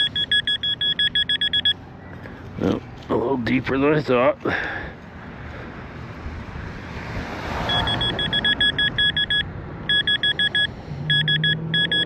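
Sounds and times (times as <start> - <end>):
metal detector beeping: 0.0 - 1.8, 7.7 - 12.0
road traffic hiss: 1.8 - 8.2, 10.6 - 11.4.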